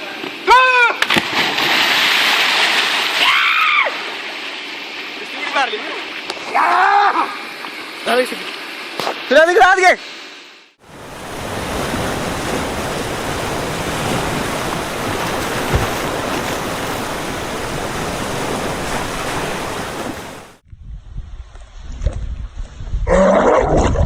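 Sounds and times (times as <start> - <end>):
steady rushing noise: 10.8 - 20.6.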